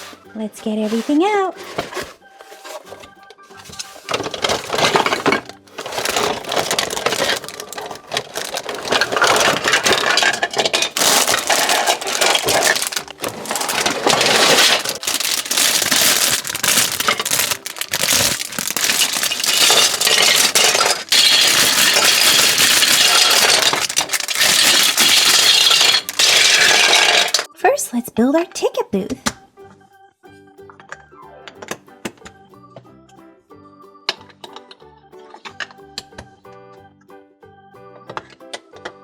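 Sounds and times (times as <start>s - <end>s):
plastic bricks clattering: 3.6s - 27.5s.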